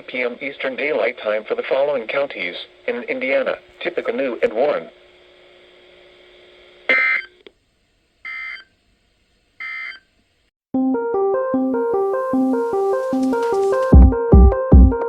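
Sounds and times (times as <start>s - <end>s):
faint steady hum: 0.0s - 10.5s
piano-like music: 10.8s - 15.0s.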